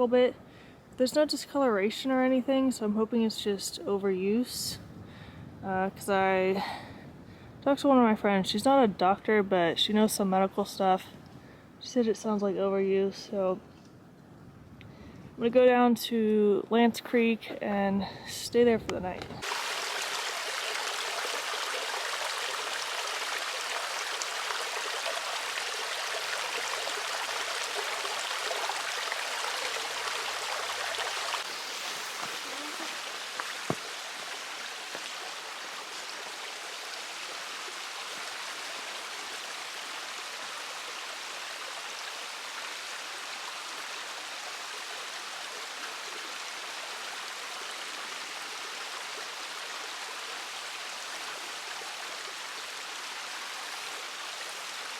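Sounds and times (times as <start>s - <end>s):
stream rushing: 19.4s - 54.9s.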